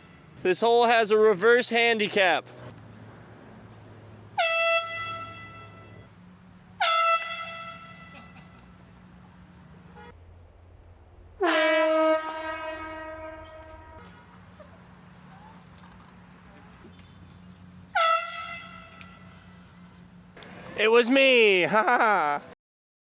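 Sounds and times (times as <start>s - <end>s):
air horn blasts: 4.4s - 6.1s, 6.8s - 8.3s, 11.4s - 14.1s, 17.9s - 19.6s.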